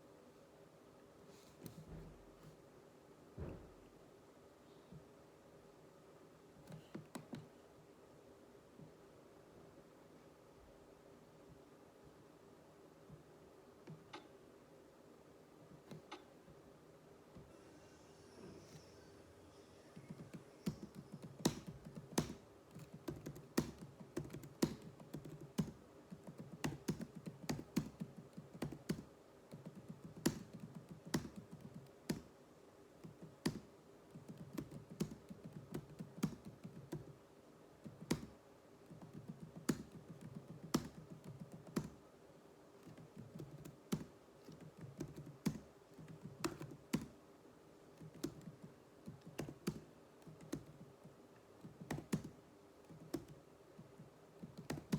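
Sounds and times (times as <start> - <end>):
faint steady hum: 0.0 - 54.9
typing on computer keyboard: 20.0 - 32.3, 33.0 - 37.2, 37.9 - 42.0, 42.8 - 47.2, 48.0 - 53.4, 54.4 - 54.9.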